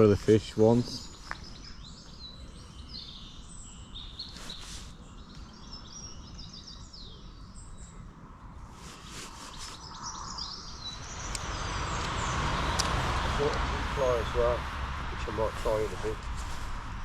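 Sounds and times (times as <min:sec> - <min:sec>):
songbirds chirping and trilling: 0:00.0 - 0:17.0
brief rustles: 0:04.2 - 0:05.0, 0:08.7 - 0:10.0
low background rumble: 0:09.9 - 0:17.0.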